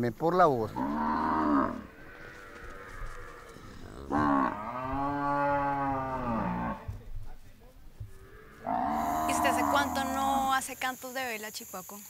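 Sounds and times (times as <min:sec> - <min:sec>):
cattle mooing: 0:00.8 - 0:06.9, 0:08.1 - 0:10.6.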